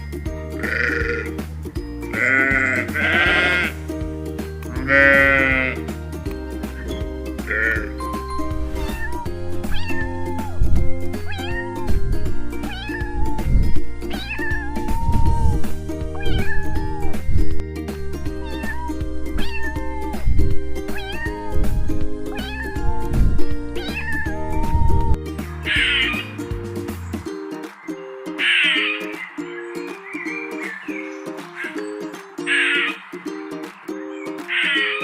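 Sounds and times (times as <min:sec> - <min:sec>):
background music: 0:00.0 - 0:35.0
cat meowing: 0:08.8 - 0:12.0, 0:12.6 - 0:17.2, 0:18.4 - 0:20.2, 0:20.9 - 0:21.6, 0:22.3 - 0:23.2, 0:23.8 - 0:26.2, 0:28.4 - 0:29.0.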